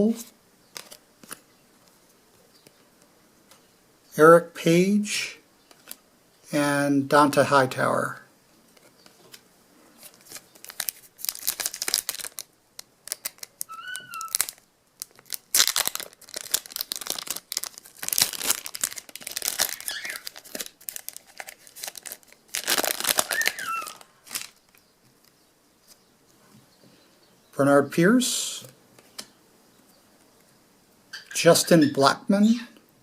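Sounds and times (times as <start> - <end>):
foil wrapper tearing and crinkling: 10.0 - 24.8.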